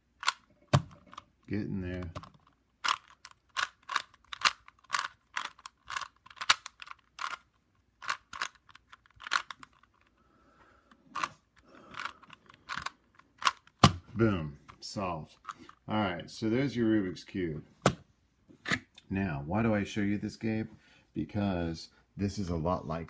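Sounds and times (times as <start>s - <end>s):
puzzle cube clicking as twisted: 0.1s - 10.1s, 10.9s - 14.0s.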